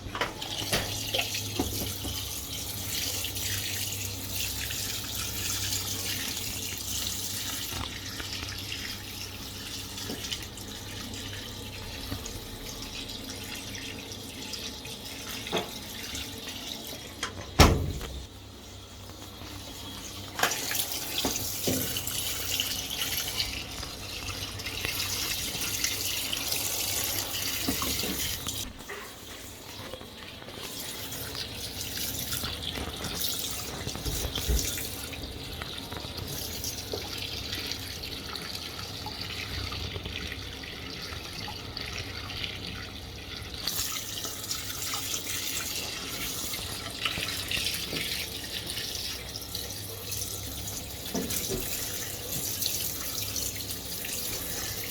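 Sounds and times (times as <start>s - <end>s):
water rushing into washing machine: 0.0s - 54.9s.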